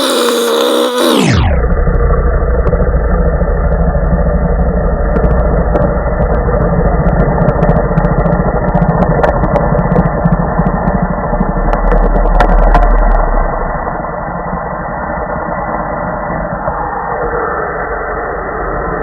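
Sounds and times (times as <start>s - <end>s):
muffled low rumble: 1.5s - 15.5s.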